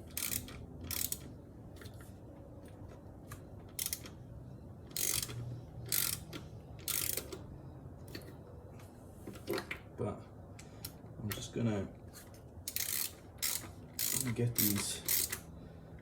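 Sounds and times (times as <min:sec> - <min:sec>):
ratchet wrench clicking: 0:00.0 - 0:01.3, 0:03.7 - 0:04.2, 0:04.9 - 0:07.4, 0:12.7 - 0:15.5.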